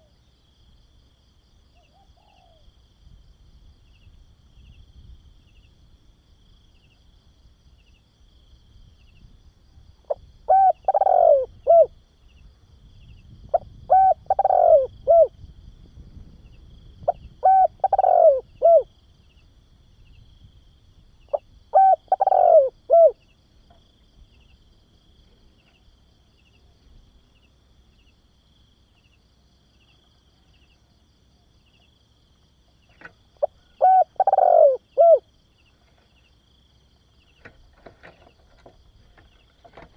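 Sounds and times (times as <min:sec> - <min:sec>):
dove cooing: 0:01.8 - 0:02.7, 0:10.1 - 0:12.0, 0:13.5 - 0:15.4, 0:17.1 - 0:18.9, 0:21.3 - 0:23.3, 0:33.4 - 0:35.3.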